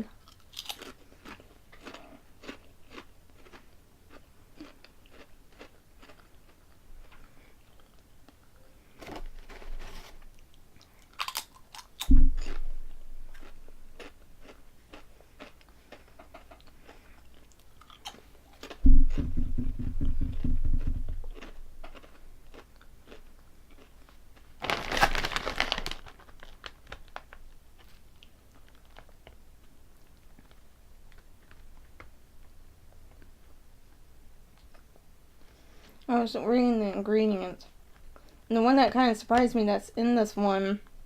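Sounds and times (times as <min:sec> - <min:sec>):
crunching and chewing snacks: 0:00.0 - 0:08.5, 0:09.4 - 0:18.9, 0:20.8 - 0:32.5
sharp low thump: 0:12.1 - 0:13.4, 0:18.8 - 0:21.4.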